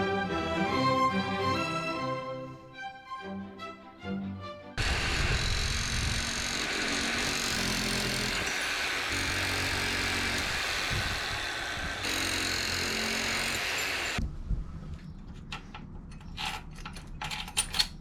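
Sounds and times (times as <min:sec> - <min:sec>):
clicks and knocks of metal parts: 0:15.3 - 0:18.0.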